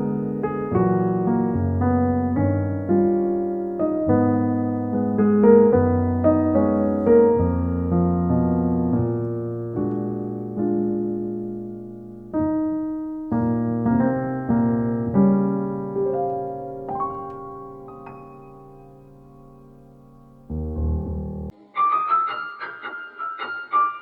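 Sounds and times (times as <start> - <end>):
slow solo piano music: 0.0 - 24.0.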